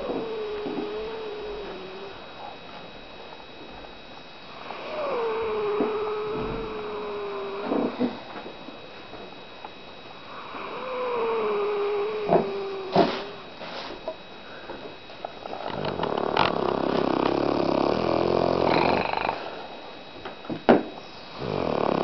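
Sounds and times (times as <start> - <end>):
person snoring: 0.0 - 2.5, 4.5 - 8.2, 10.3 - 13.4, 15.5 - 19.7, 21.2 - 22.0.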